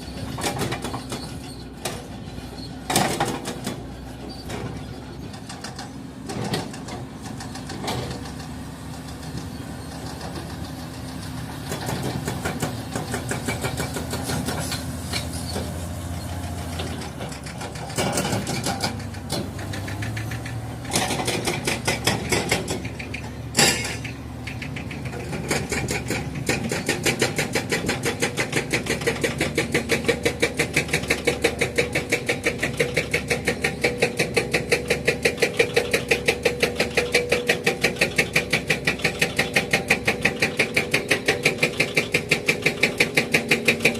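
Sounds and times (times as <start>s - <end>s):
diesel engine knocking: 5.3s - 43.9s
sharp metallic clanks: 17.3s - 28.0s.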